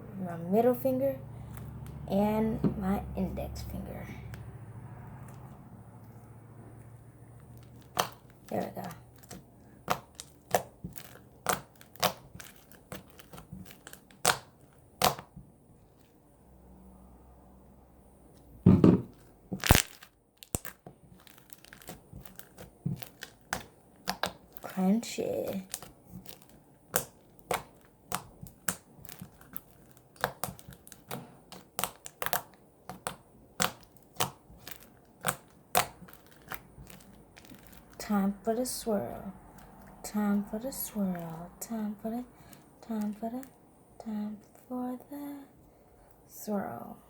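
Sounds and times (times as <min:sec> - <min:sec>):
slime clicking and popping: 0:07.4 - 0:15.3, 0:19.6 - 0:24.8, 0:25.5 - 0:38.0.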